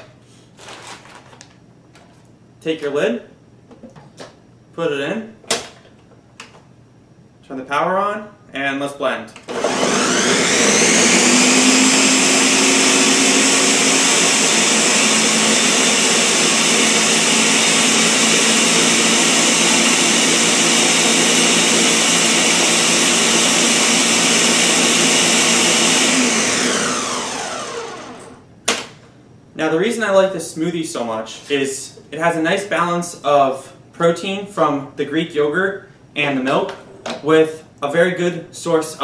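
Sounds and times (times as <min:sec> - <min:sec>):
blender running: 0:09.5 - 0:28.4.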